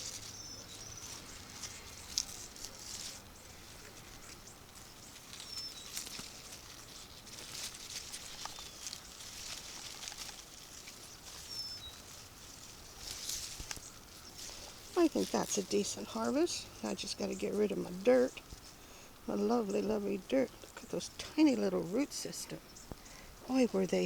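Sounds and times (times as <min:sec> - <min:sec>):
faint bird chirps: 0:00.0 - 0:10.2, 0:10.8 - 0:19.8
leaves and soil rustling: 0:00.0 - 0:24.0.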